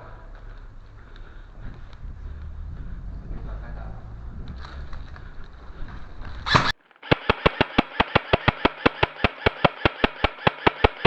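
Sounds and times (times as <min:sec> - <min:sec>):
low rumbling wind: 0:00.0 - 0:06.7
loud sharp crack: 0:06.5 - 0:11.0
rapid airsoft gun shots: 0:06.5 - 0:11.0.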